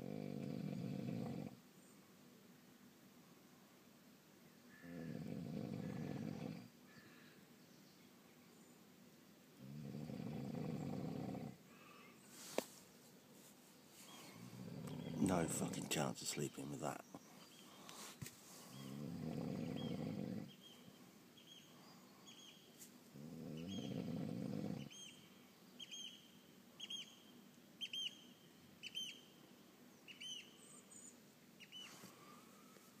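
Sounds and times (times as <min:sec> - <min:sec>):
man snoring: 0:04.9 - 0:06.6, 0:09.6 - 0:11.6, 0:18.8 - 0:20.5, 0:23.2 - 0:24.9.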